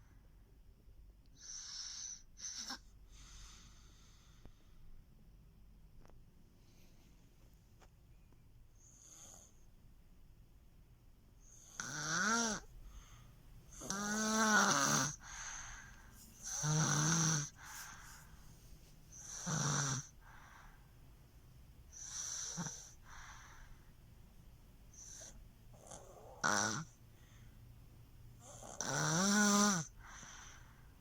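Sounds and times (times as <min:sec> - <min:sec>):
soft breaths: 0:01.3 - 0:05.2, 0:06.0 - 0:08.0, 0:11.4 - 0:28.8, 0:29.8 - 0:31.0
baby snoring: 0:01.4 - 0:02.9, 0:11.5 - 0:13.1, 0:13.7 - 0:18.4, 0:19.1 - 0:20.6, 0:21.9 - 0:23.5, 0:25.0 - 0:27.0, 0:28.4 - 0:30.6.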